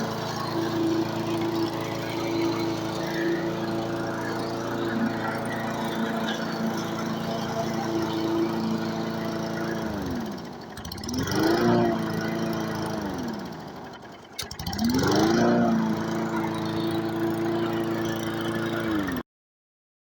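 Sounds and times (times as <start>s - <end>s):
lawn mower engine running: 0.0s - 19.2s.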